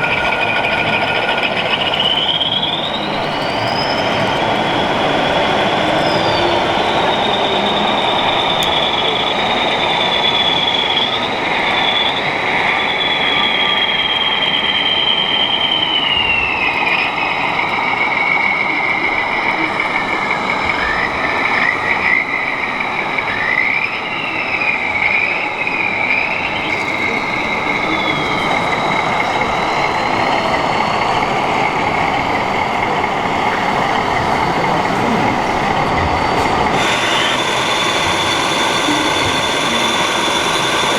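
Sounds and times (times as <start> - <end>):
model tractor motors whining: 0.0 - 40.9.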